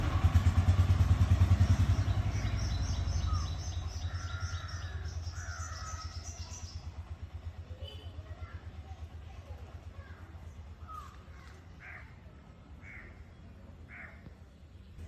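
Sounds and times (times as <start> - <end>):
birds chirping: 0.0 - 7.4
vehicle engine running: 0.0 - 12.0.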